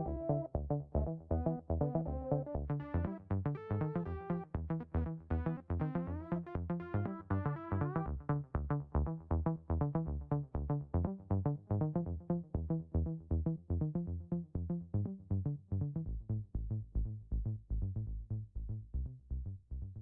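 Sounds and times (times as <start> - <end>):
synthesizer bass notes: 0.0 - 10.4.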